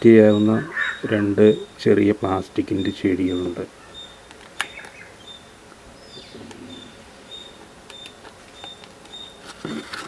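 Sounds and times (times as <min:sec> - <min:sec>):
packaging clicks and rustles: 0:07.9 - 0:10.0.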